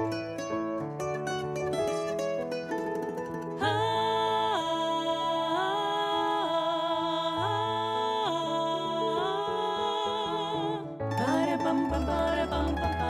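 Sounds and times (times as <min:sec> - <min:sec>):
plucked strings: 0:00.0 - 0:13.0
low bass notes: 0:11.2 - 0:13.0.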